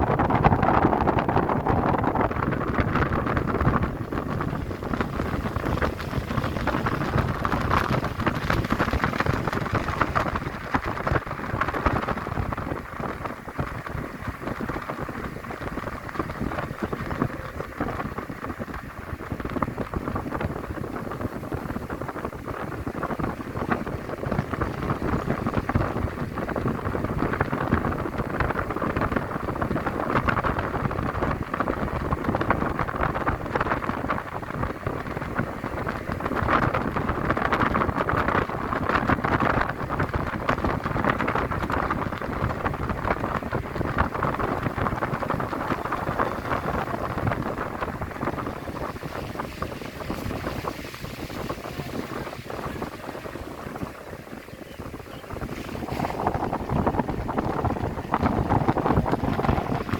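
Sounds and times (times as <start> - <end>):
car road noise: 0.0 - 59.9
rushing wind: 0.0 - 59.9
dense crackle: 0.1 - 59.9.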